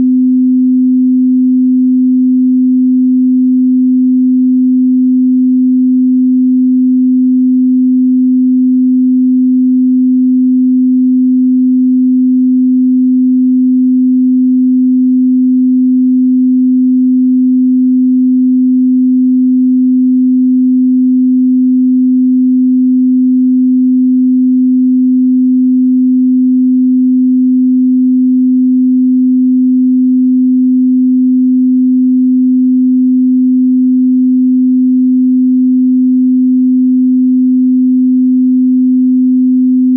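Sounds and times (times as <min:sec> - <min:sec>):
steady sine tone: 0:00.0 - 0:39.9.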